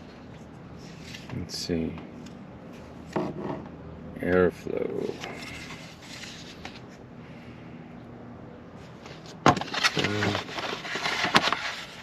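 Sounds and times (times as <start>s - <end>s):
packaging crackling and rustling: 9.2s - 12.0s.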